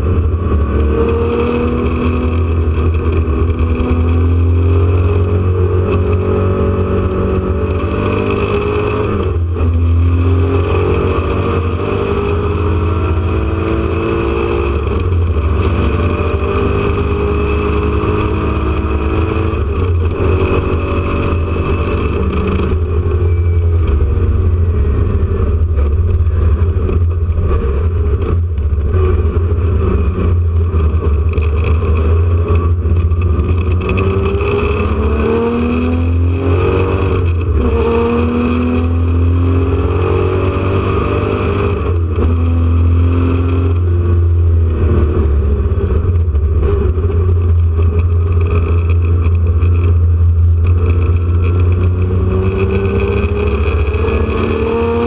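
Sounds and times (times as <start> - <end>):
racing car engine revving: 0.0 - 55.0
steady low drone: 12.6 - 40.5.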